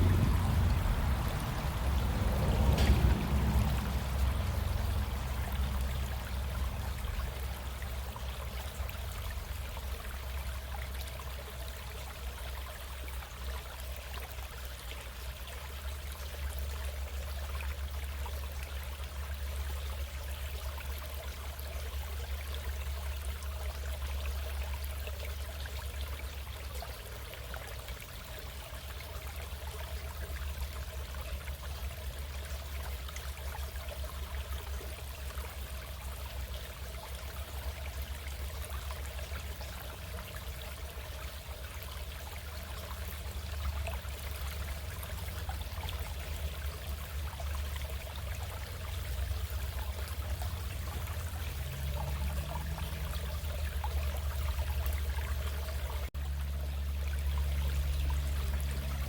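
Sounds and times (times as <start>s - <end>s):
low rumble: 0.0s - 8.5s
stream flowing: 0.0s - 59.0s.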